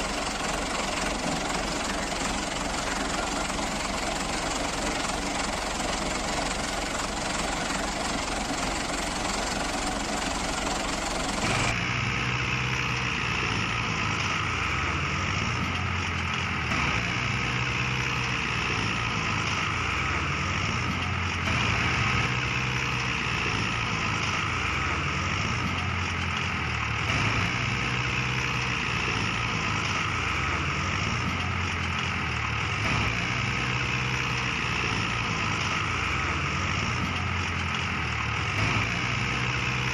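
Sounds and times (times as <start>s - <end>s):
tractor engine running: 0.0s - 39.9s.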